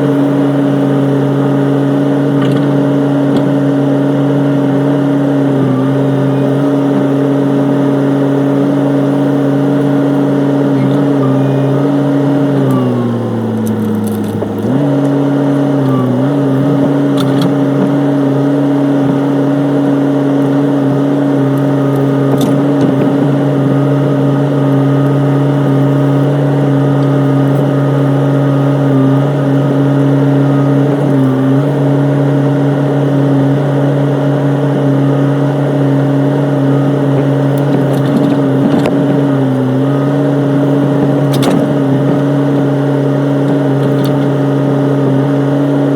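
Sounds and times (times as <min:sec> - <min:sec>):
diesel engine running: 0:00.0 - 0:45.9
hydraulics working: 0:00.0 - 0:45.9.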